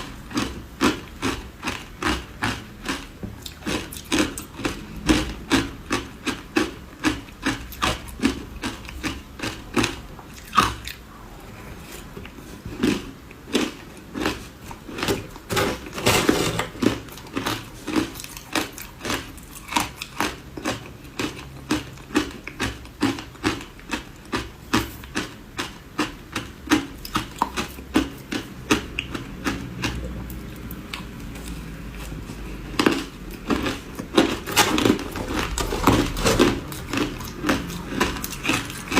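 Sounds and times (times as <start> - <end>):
person chewing ice: 0.0 - 38.9.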